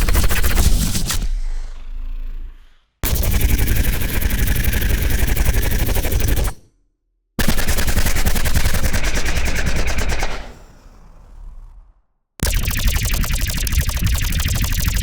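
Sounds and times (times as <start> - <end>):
sci-fi machine gun bursts: 0.0 - 1.4, 3.0 - 6.5, 7.4 - 11.0, 12.4 - 15.0.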